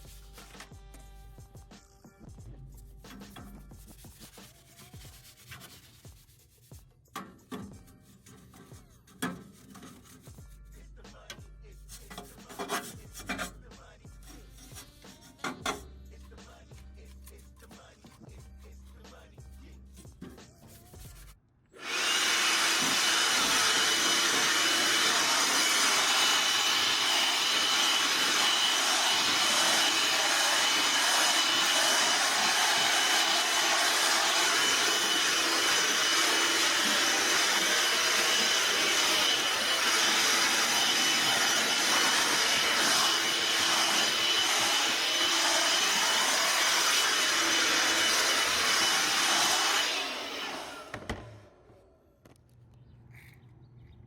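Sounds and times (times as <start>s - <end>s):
fan or blower running: 21.8s - 51.4s.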